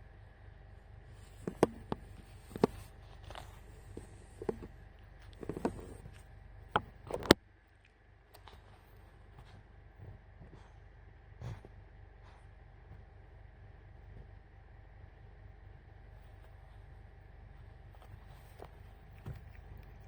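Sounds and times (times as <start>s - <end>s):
steady low hum: 0.0s - 20.0s
light knocks and clicks: 1.2s - 6.2s.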